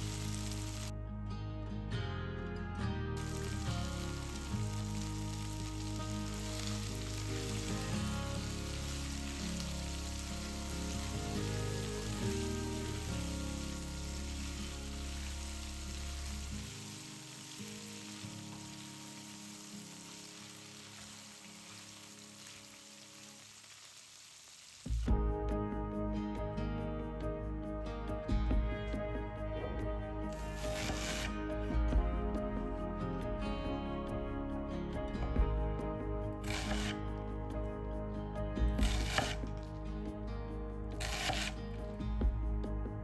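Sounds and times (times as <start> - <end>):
food sizzling in hot oil: 0.0 - 0.9, 3.2 - 25.1, 30.4 - 31.3, 36.4 - 37.0, 38.8 - 39.4, 41.0 - 41.6
background music: 0.0 - 22.5, 24.9 - 43.0.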